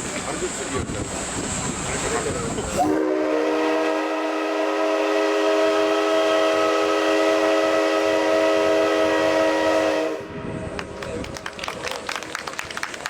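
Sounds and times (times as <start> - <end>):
steam whistle blast: 2.8 - 10.6.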